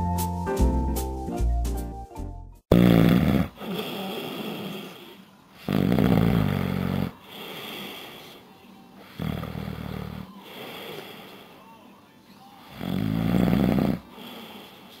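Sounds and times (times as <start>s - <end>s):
piano music: 0.0s - 2.6s
man snoring heavily: 2.7s - 8.4s, 9.1s - 11.5s, 12.6s - 15.0s
quiet breath: 3.5s - 5.7s, 6.6s - 15.0s.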